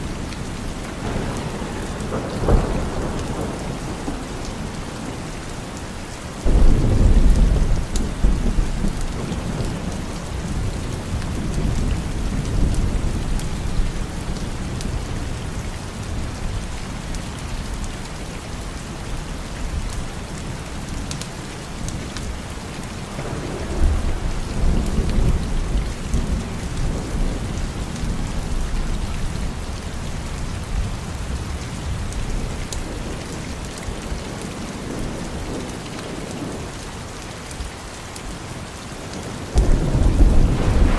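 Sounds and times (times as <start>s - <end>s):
rolling thunder: 0.0s - 16.6s, 23.1s - 36.7s, 39.5s - 40.9s
steady rain falling: 0.0s - 40.9s.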